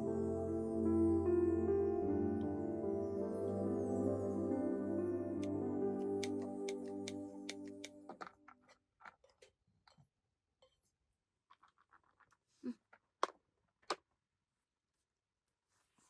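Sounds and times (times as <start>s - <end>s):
background music: 0.0s - 8.4s.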